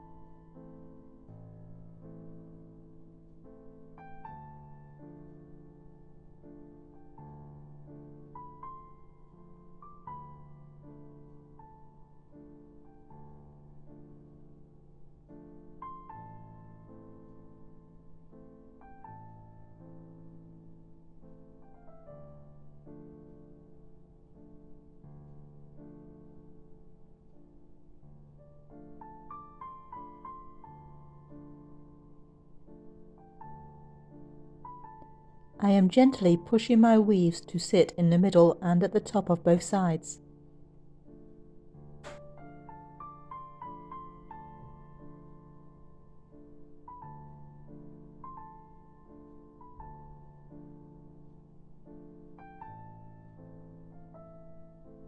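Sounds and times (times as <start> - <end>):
quiet piano music: 0.0 - 55.0.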